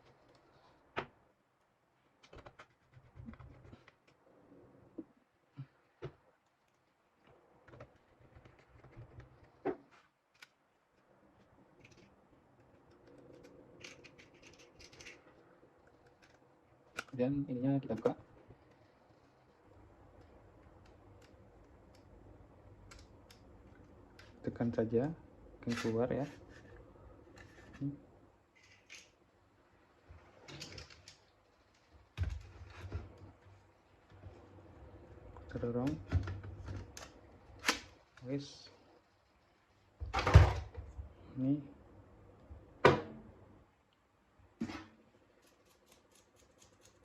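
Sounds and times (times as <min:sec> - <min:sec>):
laptop parts clicking and scratching: 0:02.2 - 0:04.2, 0:07.6 - 0:17.2, 0:45.3 - 0:47.0.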